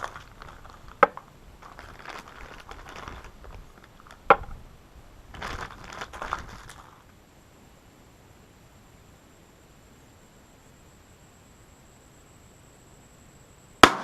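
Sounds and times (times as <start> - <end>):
rustling handling noises: 0.0 - 4.3, 5.3 - 7.1.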